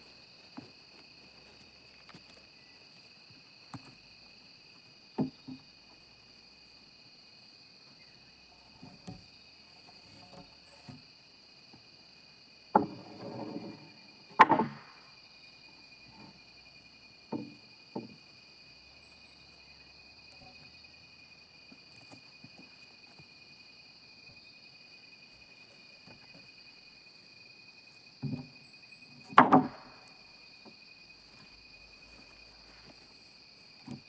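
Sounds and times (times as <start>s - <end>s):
wooden knocks and clatters: 5.2s - 5.7s, 12.7s - 15.0s, 17.3s - 18.3s, 28.2s - 28.6s, 29.2s - 31.5s.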